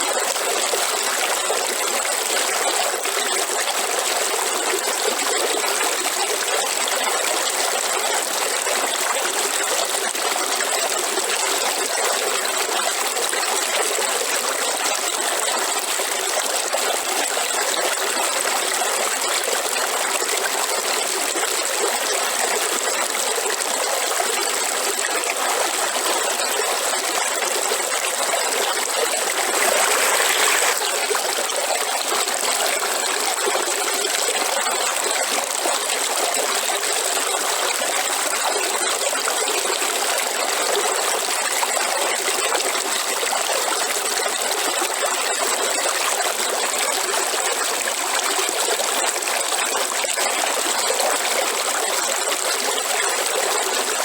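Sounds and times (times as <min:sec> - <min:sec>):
river water flowing: 0:19.7 - 0:42.9.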